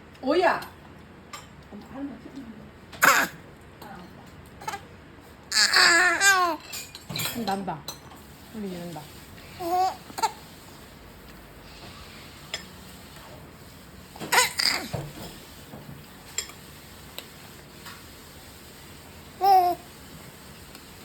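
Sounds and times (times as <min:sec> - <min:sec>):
baby shrieking: 0:03.0 - 0:03.4, 0:05.5 - 0:06.6, 0:14.4 - 0:14.9.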